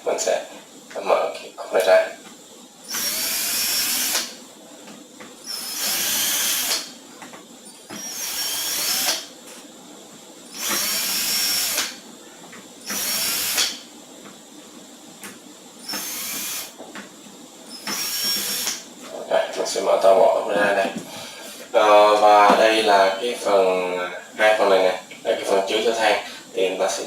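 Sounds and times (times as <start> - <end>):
cordless screwdriver motor whine: 2.9 - 4.4, 5.4 - 6.9, 7.9 - 9.3, 10.5 - 12.0, 12.8 - 13.8, 15.8 - 16.8, 17.7 - 18.8.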